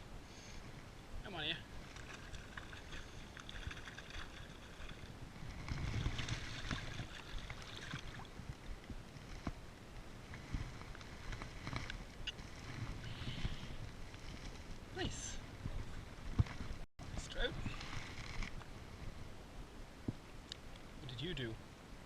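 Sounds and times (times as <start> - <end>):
wind: 0.0 - 22.0
water lapping: 1.7 - 14.7.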